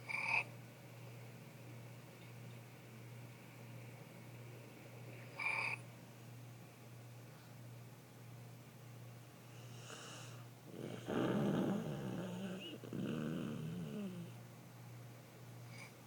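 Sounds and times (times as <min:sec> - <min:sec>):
steady low hum: 0:00.0 - 0:16.0
person snoring: 0:09.8 - 0:14.3.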